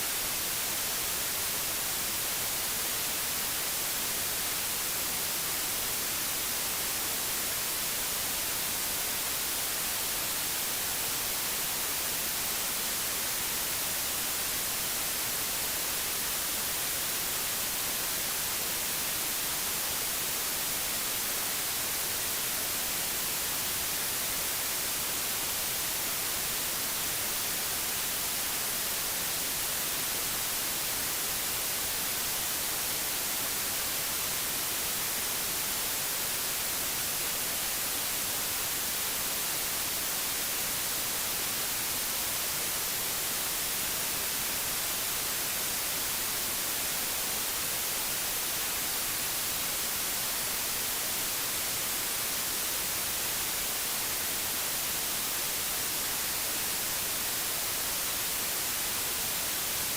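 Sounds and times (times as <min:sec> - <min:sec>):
white noise hiss: 0:00.0 - 0:59.9.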